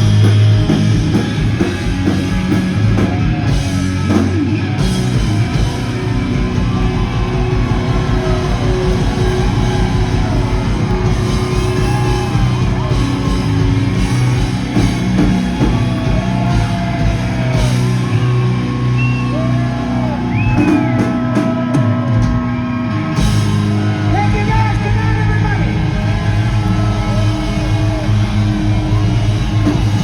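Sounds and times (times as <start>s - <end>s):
hard rock band playing: 0.0s - 30.0s.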